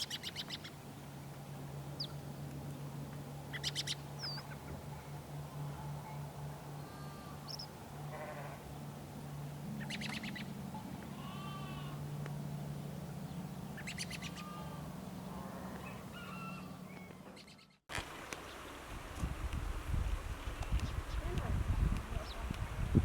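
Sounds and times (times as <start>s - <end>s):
steady low hum: 0.0s - 17.0s
bird chirps: 3.5s - 4.7s, 9.8s - 10.5s, 13.7s - 14.6s, 15.7s - 17.8s
animal bleats: 6.8s - 8.6s, 11.1s - 12.0s, 14.2s - 16.4s.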